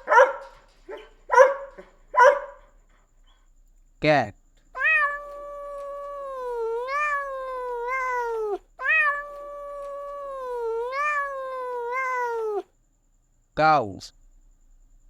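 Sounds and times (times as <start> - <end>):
cat meowing: 4.8 - 12.7.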